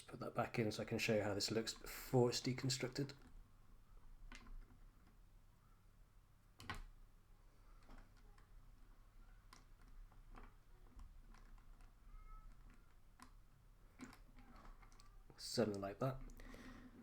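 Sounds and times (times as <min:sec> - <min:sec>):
plastic toy parts clicking: 0:09.4 - 0:13.4, 0:14.0 - 0:16.4.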